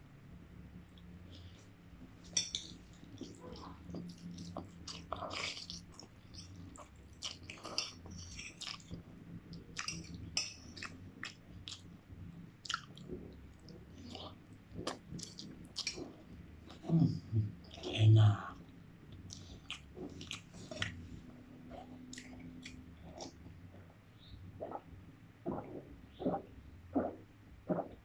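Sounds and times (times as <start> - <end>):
person chewing noodles: 1.3 - 12.0, 12.6 - 18.0, 19.1 - 23.4.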